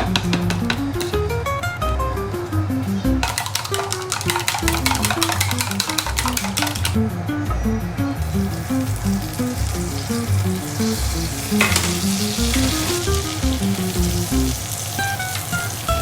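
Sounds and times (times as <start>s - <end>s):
background music: 0.0s - 16.0s
food sizzling in a pan: 8.2s - 16.0s.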